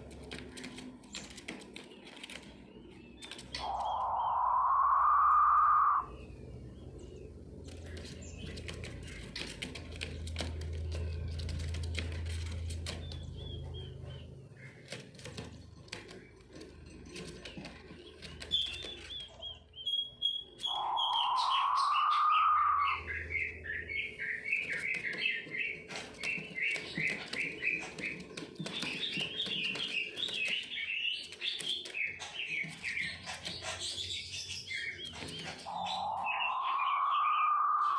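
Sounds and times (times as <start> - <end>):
clicks and scratches: 0.0 - 3.8, 7.6 - 19.6, 24.5 - 35.7
quail chirping: 3.3 - 6.3, 18.2 - 37.9
quail rising call: 3.6 - 6.1, 20.6 - 23.1.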